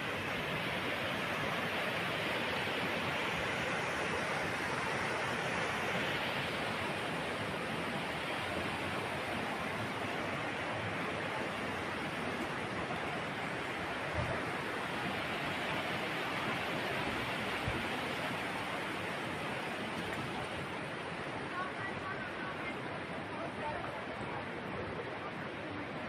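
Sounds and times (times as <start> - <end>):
floodwater rushing: 0.0 - 26.0.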